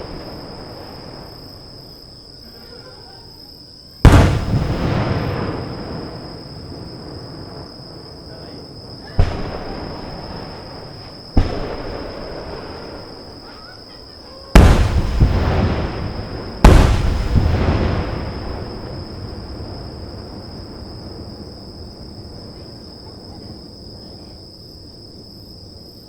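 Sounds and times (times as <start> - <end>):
high insect trill: 0.0 - 26.0
firework shells bursting: 4.0 - 6.4, 9.2 - 13.5, 14.6 - 19.4.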